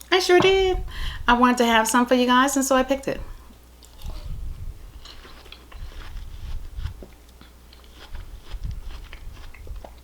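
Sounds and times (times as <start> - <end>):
chewing food: 3.8 - 10.0.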